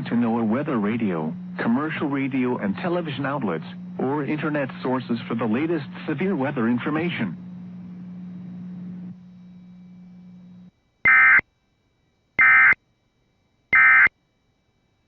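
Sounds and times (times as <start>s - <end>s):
faint low hum: 0.0s - 15.0s
short data tone bursts: 11.1s - 11.4s, 12.4s - 12.8s, 13.7s - 14.1s.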